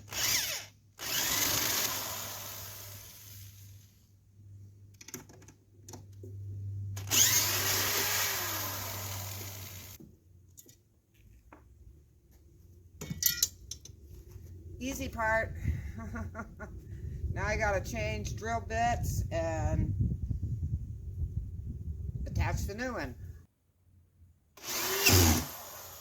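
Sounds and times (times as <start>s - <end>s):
cordless drill driving screws: 0.0s - 3.5s, 7.0s - 10.0s, 24.6s - 26.0s
small clicks and knocks: 4.9s - 6.4s.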